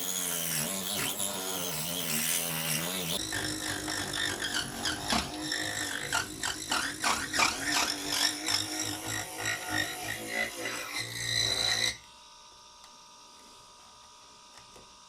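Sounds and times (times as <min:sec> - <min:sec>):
small drill motor running: 0:00.0 - 0:12.1.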